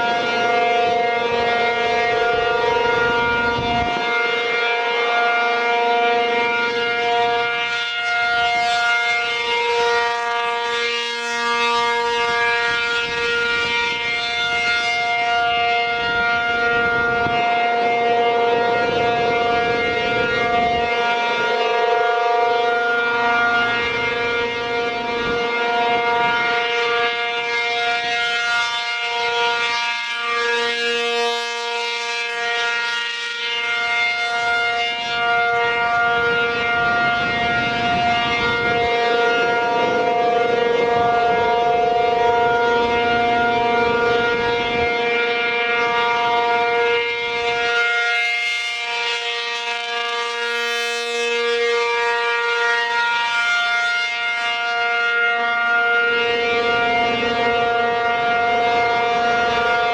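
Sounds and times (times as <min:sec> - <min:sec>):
rotating warning siren wailing: 0:00.0 - 0:59.9.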